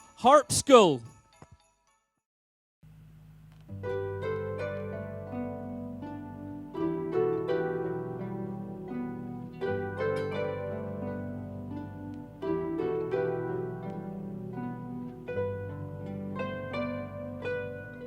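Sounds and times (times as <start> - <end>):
solo harp playing: 3.8 - 18.0.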